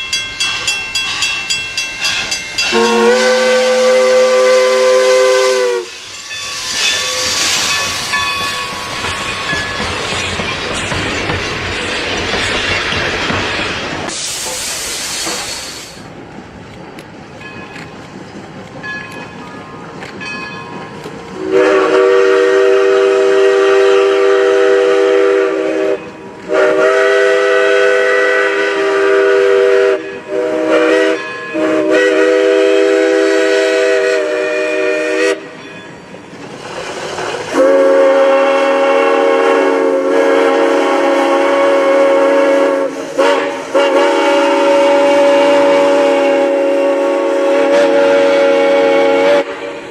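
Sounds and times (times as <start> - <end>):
train running noise: 0.0 - 49.9
locomotive horn blasts: 2.6 - 6.0, 21.4 - 35.4, 37.5 - 49.8.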